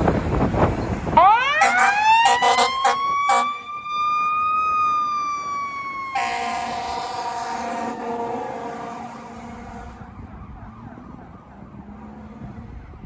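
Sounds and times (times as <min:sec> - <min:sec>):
fire engine siren wailing: 0:01.1 - 0:13.0
lower-pitched steady siren tone: 0:01.2 - 0:12.9
short horn blasts: 0:01.6 - 0:03.6, 0:06.2 - 0:10.0.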